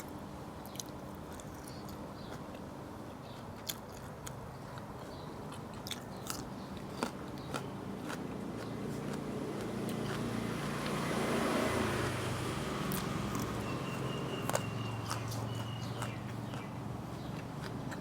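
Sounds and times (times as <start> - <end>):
person chewing: 0.6 - 2.7, 3.3 - 10.4, 12.9 - 18.0.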